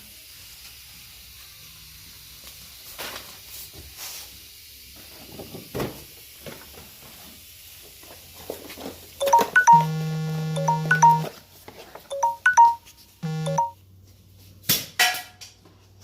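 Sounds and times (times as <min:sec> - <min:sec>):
electronic chiming melody: 0:09.2 - 0:11.3, 0:12.1 - 0:13.8.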